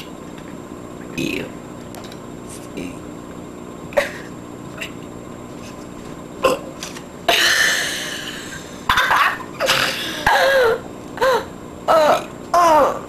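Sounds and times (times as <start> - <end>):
person's high-pitched vocal sounds: 11.9 - 13.0.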